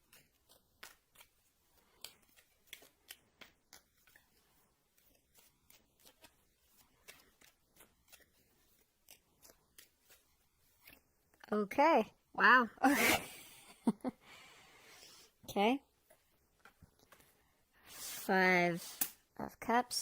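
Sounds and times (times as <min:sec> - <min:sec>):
cards shuffling flicks and snaps: 0:00.0 - 0:11.5, 0:18.0 - 0:19.3.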